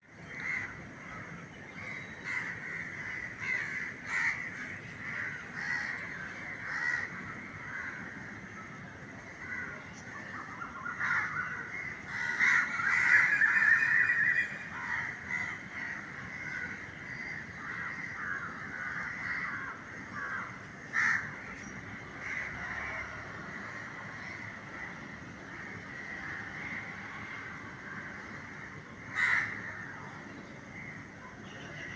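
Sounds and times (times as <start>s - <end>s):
crows cawing: 0.2s - 8.6s, 9.3s - 9.8s, 10.4s - 30.0s.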